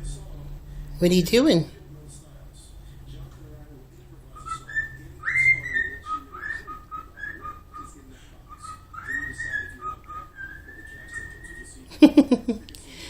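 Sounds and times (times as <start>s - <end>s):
cockatiel whistling: 4.3s - 11.9s.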